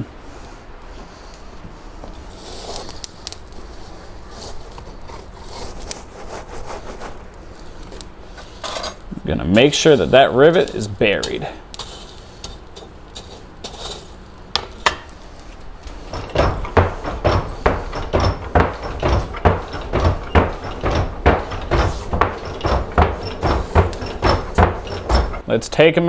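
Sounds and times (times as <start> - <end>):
bellows pumping air: 15.8 - 25.4.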